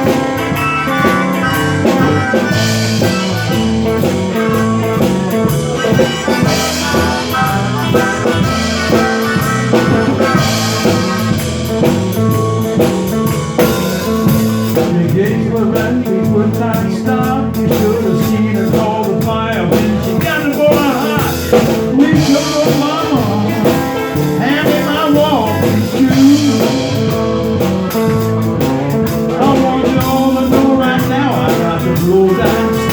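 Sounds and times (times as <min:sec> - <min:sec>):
lead instrument bending notes: 0:00.0 - 0:14.7
blues band playing: 0:00.0 - 0:32.9.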